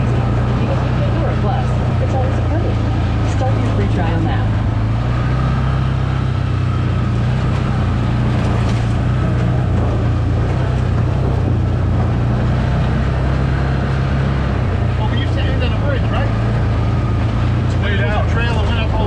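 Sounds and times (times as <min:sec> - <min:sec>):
atv engine running: 0:00.0 - 0:19.0.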